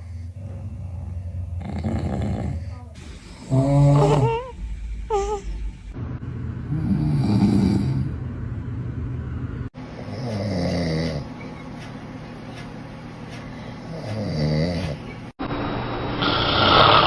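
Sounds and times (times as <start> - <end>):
man snoring: 0.0 - 2.9, 6.7 - 8.2, 10.0 - 11.3, 13.9 - 15.0.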